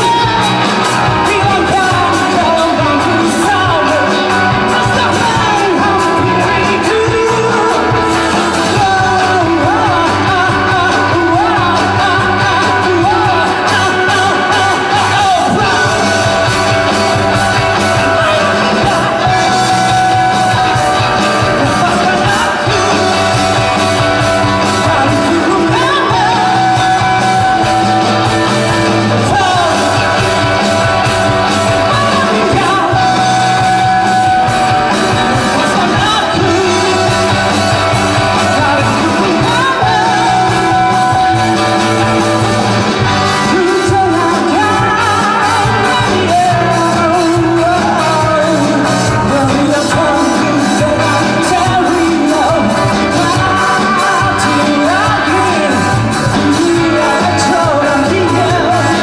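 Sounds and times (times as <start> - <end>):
lead singer singing: 0.0 - 59.0
rock band playing live: 0.0 - 59.0.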